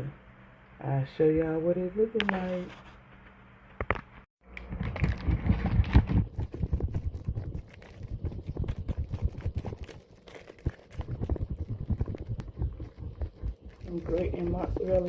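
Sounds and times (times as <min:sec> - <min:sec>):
cheese grating strokes: 0:06.4 - 0:15.0.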